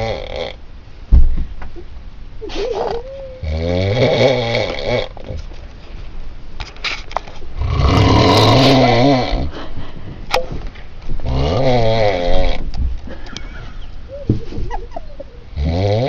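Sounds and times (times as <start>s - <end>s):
person snoring: 0.0s - 0.6s, 3.2s - 5.1s, 7.6s - 9.5s, 11.2s - 12.6s, 15.6s - 16.0s.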